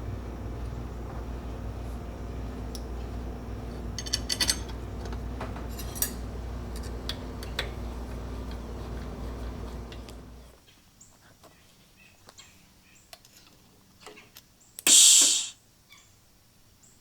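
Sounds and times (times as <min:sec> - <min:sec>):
low electrical hum: 0:00.0 - 0:10.6.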